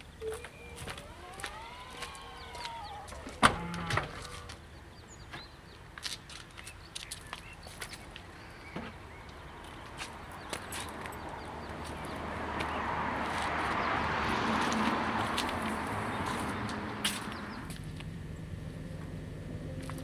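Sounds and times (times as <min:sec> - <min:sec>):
small clicks: 0:00.0 - 0:04.6
rooster crowing: 0:00.2 - 0:04.5.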